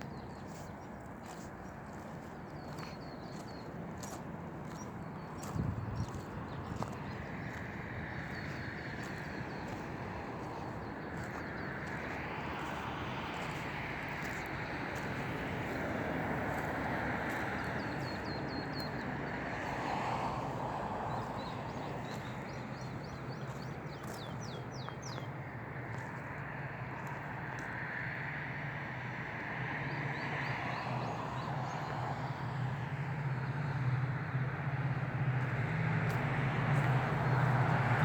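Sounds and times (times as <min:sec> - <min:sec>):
small birds chirping: 0:00.0 - 0:19.6, 0:21.1 - 0:25.3.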